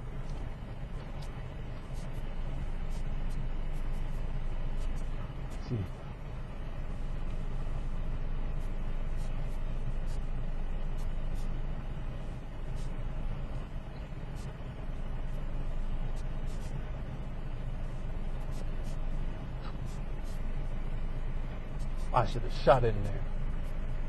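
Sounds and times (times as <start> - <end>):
car engine hum from cabin: 0.0 - 24.0.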